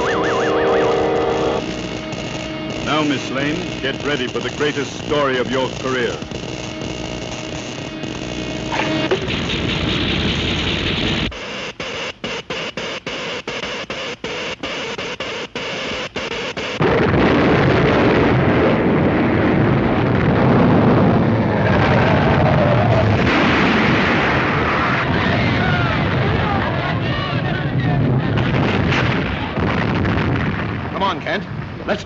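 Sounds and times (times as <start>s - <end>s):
swirling orchestral music: 0.0s - 1.6s
noisy electric machine drone: 0.0s - 25.1s
heavy earthquake rumble: 16.8s - 32.0s.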